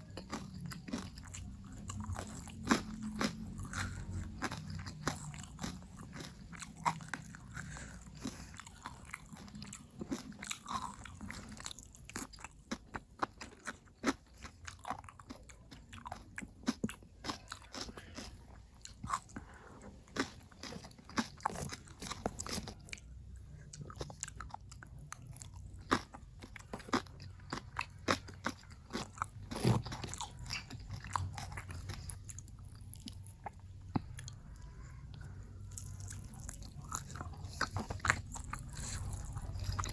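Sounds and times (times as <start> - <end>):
wet chewing: 0.0 - 39.9
crunchy bites: 0.1 - 19.4.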